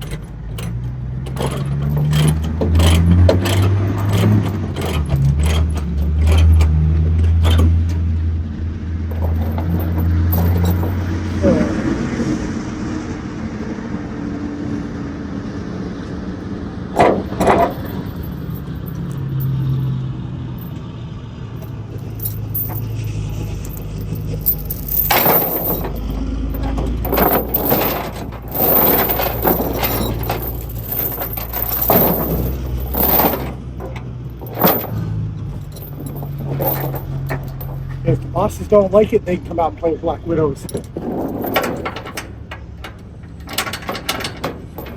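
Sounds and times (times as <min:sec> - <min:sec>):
chains rattling against metal: 0:00.0 - 0:08.2, 0:09.1 - 0:11.6, 0:17.0 - 0:20.0, 0:21.6 - 0:38.7, 0:40.5 - 0:44.9
low engine hum: 0:00.0 - 0:44.9.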